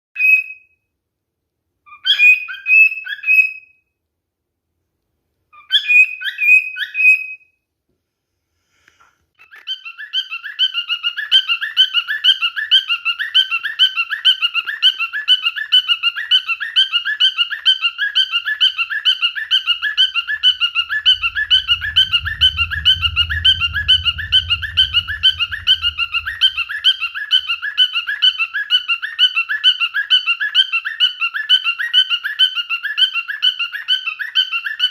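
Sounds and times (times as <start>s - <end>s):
cockatiel whistled calls: 1.9s - 3.8s, 5.6s - 7.5s, 25.4s - 34.9s.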